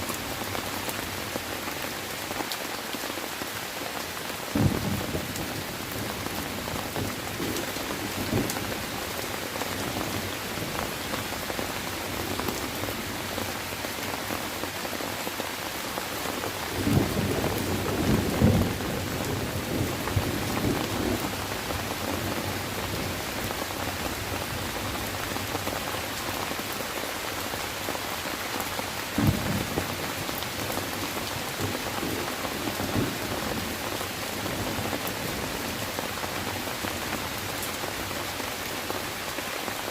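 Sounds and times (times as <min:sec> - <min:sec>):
steady rain falling: 0:00.0 - 0:39.9
low thunder rumbles: 0:16.8 - 0:21.5, 0:29.2 - 0:30.4.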